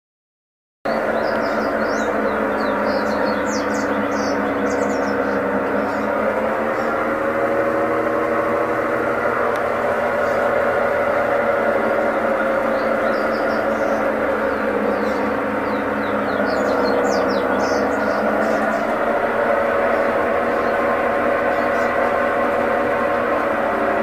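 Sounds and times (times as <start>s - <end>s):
washing machine humming: 0.9s - 24.0s.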